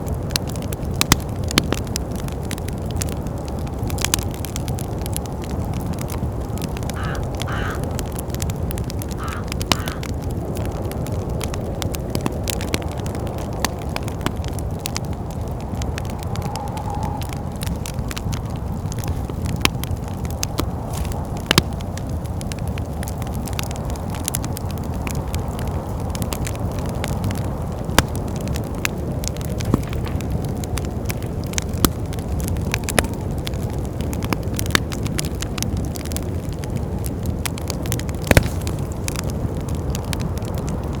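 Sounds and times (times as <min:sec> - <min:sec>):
fire popping: 0:00.0 - 0:41.0
low wind rumble: 0:00.0 - 0:41.0
wood fire crackling: 0:00.0 - 0:41.0.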